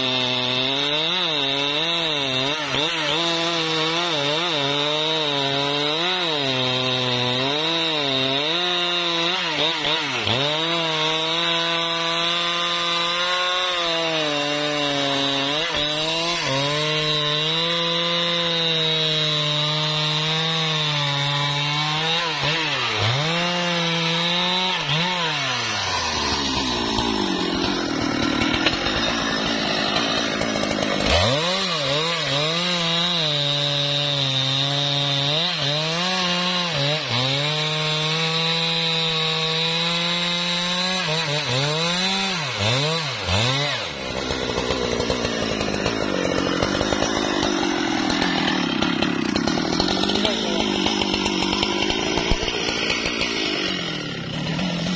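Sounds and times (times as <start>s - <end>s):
chainsaw cutting wood: 0.0s - 54.9s.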